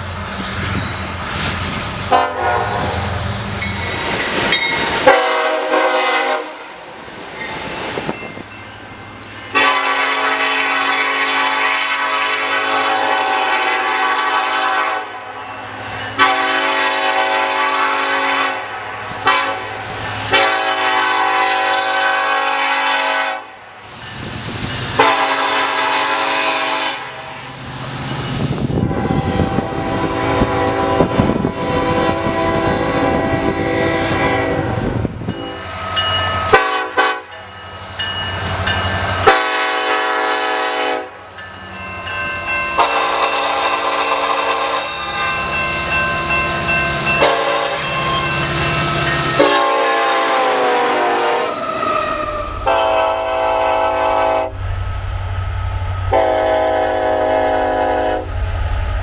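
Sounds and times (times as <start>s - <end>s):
low train rumble: 0.0s - 59.0s
locomotive air horns: 2.1s - 3.1s, 5.0s - 6.9s, 9.5s - 15.4s, 16.2s - 23.6s, 25.0s - 27.4s, 28.8s - 34.8s, 36.5s - 37.3s, 39.2s - 41.2s, 42.8s - 45.0s, 47.2s - 47.9s, 48.7s - 54.6s, 56.1s - 58.3s.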